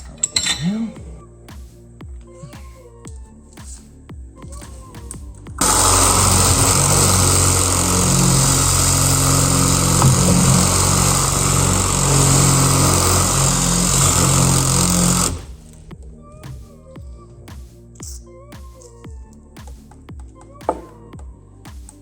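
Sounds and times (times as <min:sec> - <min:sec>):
electric drill boring into metal: 0:05.6 - 0:15.6.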